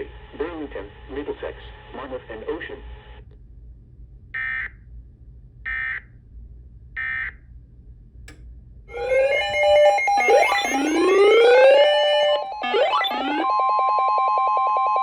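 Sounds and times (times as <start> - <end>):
click: 8.3 - 8.5
bursts of data tones: 8.9 - 13.6
synthesizer music with sweeping tones: 8.9 - 13.7.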